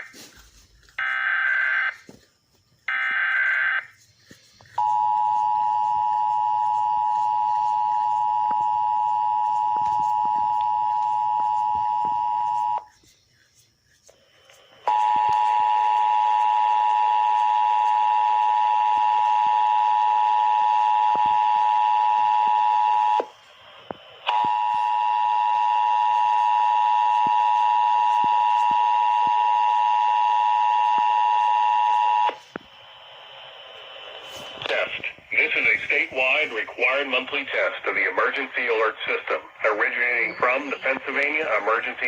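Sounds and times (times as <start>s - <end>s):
two-tone emergency alert alarm: 1.0s - 2.0s, 2.8s - 4.0s, 4.7s - 12.9s, 14.8s - 23.4s, 24.2s - 33.1s.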